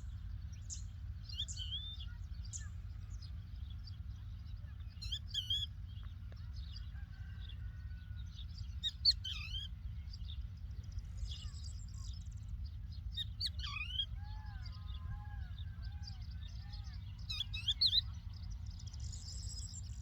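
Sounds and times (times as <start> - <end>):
lark singing: 0.0 - 3.2, 4.6 - 5.8, 8.7 - 20.0
low rumble: 0.0 - 20.0.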